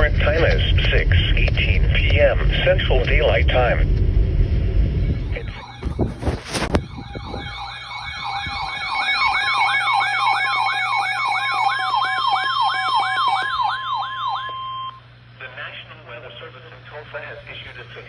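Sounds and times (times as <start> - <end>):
steady tone: 0.0 - 15.0
electronic siren yelping: 4.9 - 15.0.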